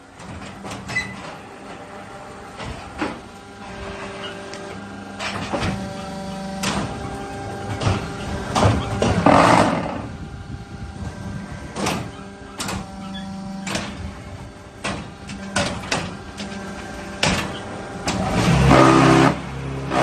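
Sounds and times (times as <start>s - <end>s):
motor hum: 0.0s - 20.0s.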